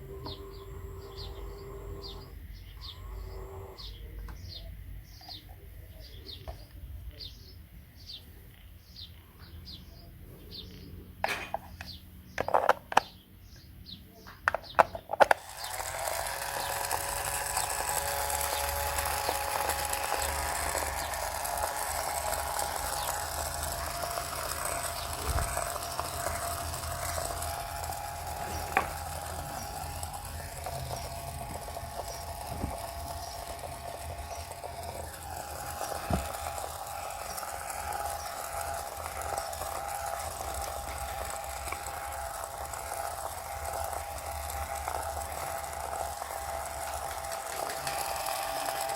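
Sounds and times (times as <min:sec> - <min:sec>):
small electric motor whining: 0:00.0 - 0:04.2, 0:14.8 - 0:48.9.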